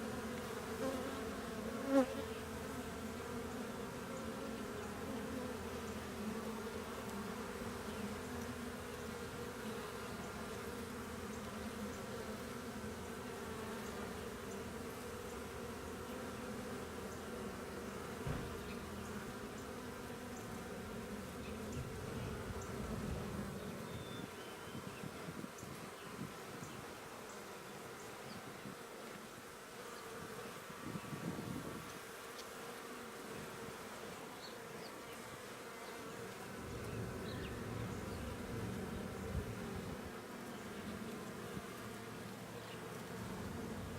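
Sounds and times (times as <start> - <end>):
honeybees buzzing: 0.0 - 43.9
single thump: 18.2 - 18.6.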